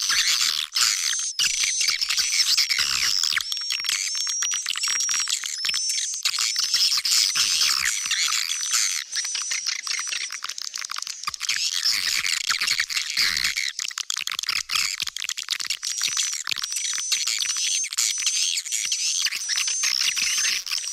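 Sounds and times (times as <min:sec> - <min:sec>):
swiftlets twittering: 0:03.4 - 0:11.6.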